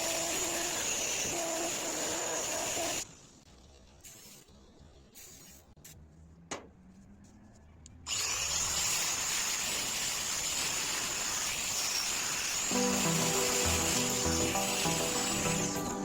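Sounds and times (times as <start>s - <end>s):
machine running with high hiss: 12.5s - 16.0s.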